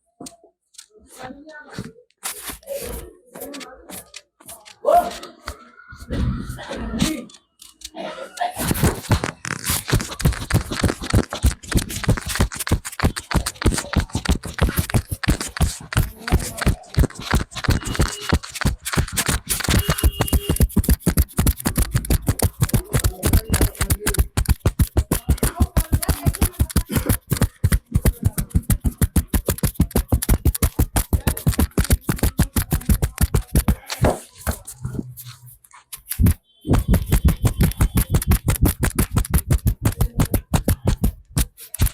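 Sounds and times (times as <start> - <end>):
hands slapping and tapping on head: 8.6 - 35.0, 35.9 - 41.9.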